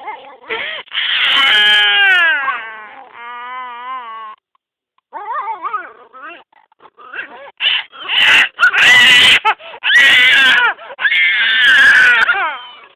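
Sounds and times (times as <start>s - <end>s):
cat yowling: 0.9s - 4.4s, 7.2s - 12.9s.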